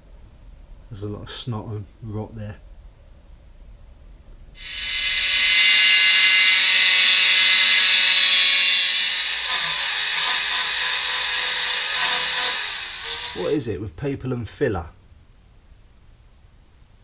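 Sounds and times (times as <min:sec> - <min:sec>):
power tool grinding metal: 0:04.6 - 0:13.6.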